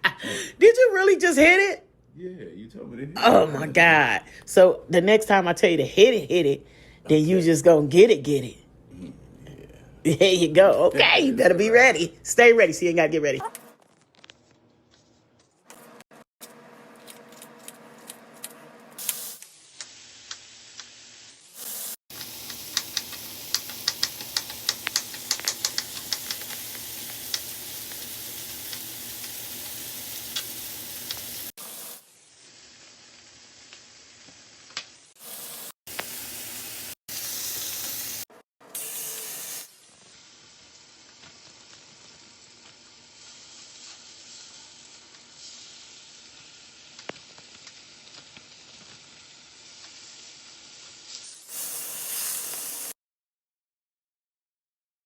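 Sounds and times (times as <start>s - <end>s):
food sizzling in hot oil: 19.0s - 53.0s
oil crackling pops: 22.1s - 31.5s, 46.9s - 49.2s.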